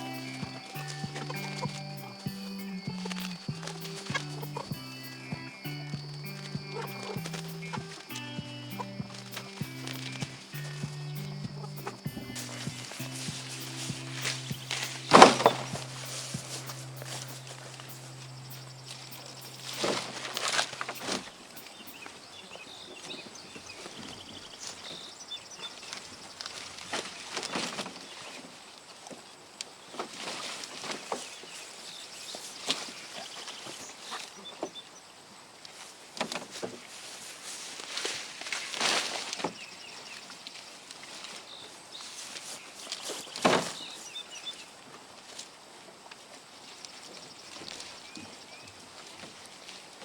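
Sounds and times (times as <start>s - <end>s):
faint high chirping: 0.0s - 23.0s
dry corn stalks rustling: 6.3s - 22.0s, 29.9s - 34.2s, 35.7s - 39.7s
corn stalks rustling and crunching: 35.8s - 39.6s.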